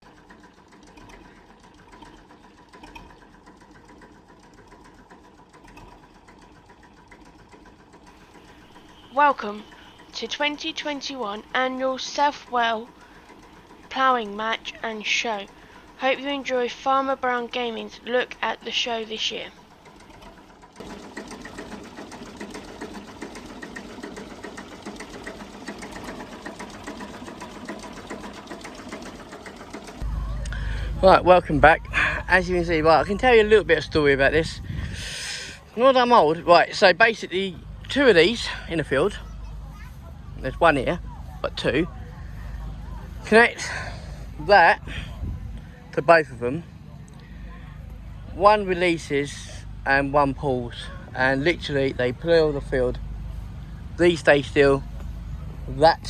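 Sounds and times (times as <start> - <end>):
machine clattering rapidly: 0.0 - 30.2
small engine running: 0.0 - 56.0
rapid ticking: 0.1 - 30.2.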